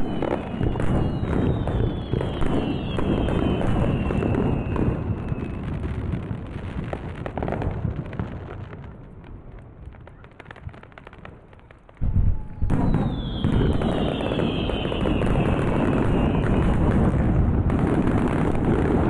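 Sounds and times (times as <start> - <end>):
fireworks bursts booming: 0.0 - 19.0
firework whistle falling in pitch: 12.0 - 16.8.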